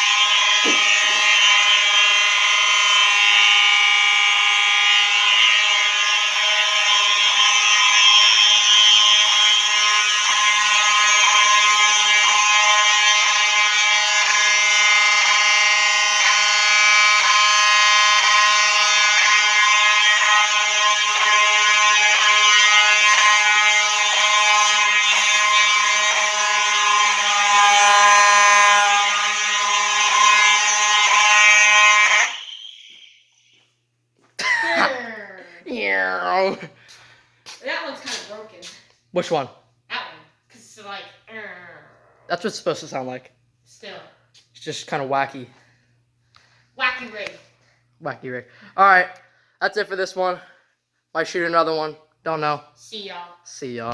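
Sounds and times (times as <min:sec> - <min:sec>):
fire alarm horns: 0:00.0 - 0:41.4, 0:42.0 - 0:53.6.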